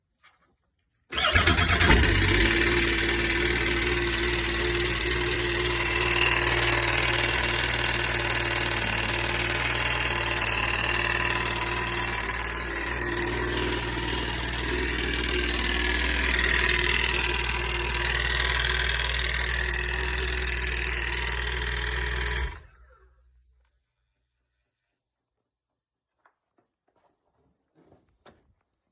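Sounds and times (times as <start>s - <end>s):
snowmobile engine knocking: 1.2s - 22.6s.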